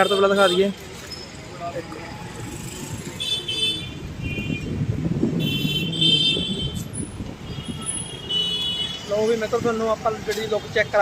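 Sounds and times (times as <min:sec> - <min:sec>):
rumble of passing vehicles: 0:00.0 - 0:11.0
vehicle horn toot: 0:05.4 - 0:09.1.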